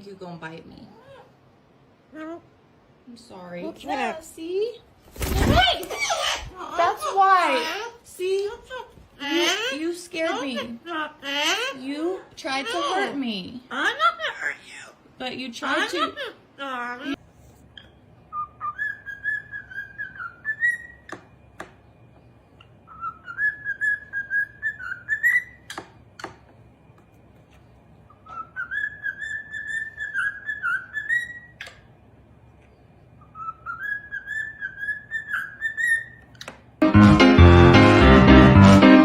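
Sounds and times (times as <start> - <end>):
parrot whistling: 22.9 - 25.6, 28.2 - 31.6.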